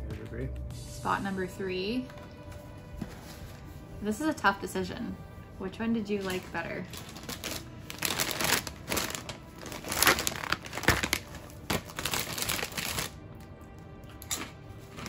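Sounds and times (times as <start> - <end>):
snack packaging crinkling: 6.9 - 15.0.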